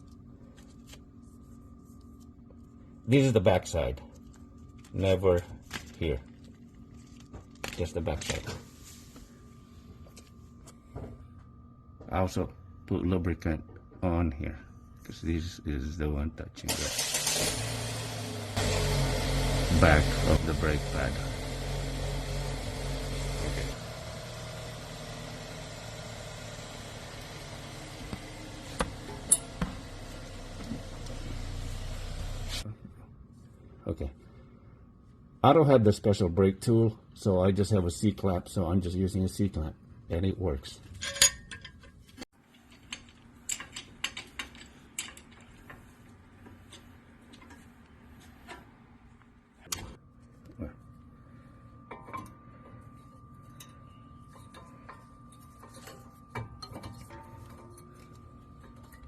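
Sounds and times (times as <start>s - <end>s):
low background hum: 0.0s - 17.6s, 19.5s - 59.0s
tools clicking and tapping: 41.0s - 45.8s, 53.4s - 59.0s
metal clamp clicking and clinking: 42.7s - 45.8s.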